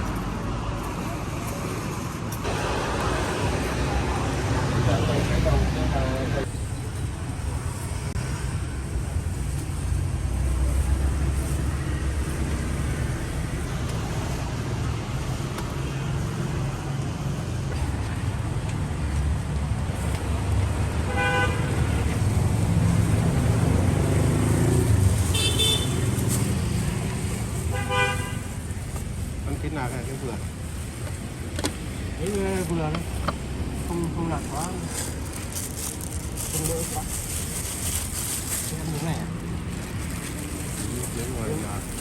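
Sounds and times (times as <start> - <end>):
road traffic rumble: 0.0 - 42.0
vehicle horn toots: 21.1 - 21.9, 25.3 - 26.0, 27.7 - 28.4.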